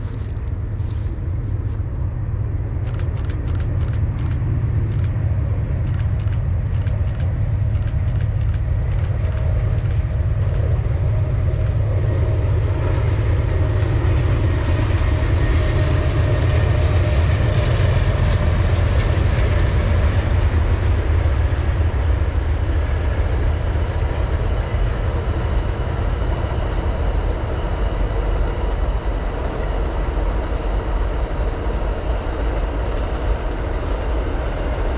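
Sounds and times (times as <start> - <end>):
train wheels on rails: 0.0 - 5.2, 5.8 - 34.9
diesel locomotive engine drone: 0.0 - 34.9
sharp clicks: 2.7 - 5.2, 5.8 - 10.8, 11.5 - 11.8, 12.6 - 14.0, 32.8 - 34.7.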